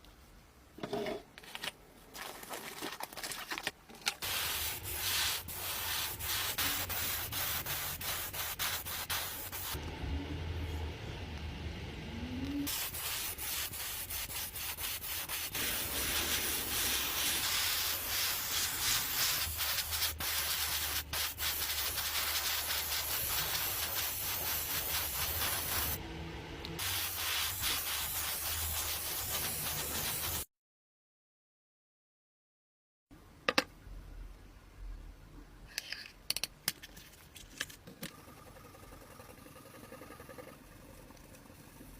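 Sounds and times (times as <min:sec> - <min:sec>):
sanding hiss and scratching: 0:04.2 - 0:09.8, 0:12.7 - 0:26.0, 0:26.8 - 0:30.5.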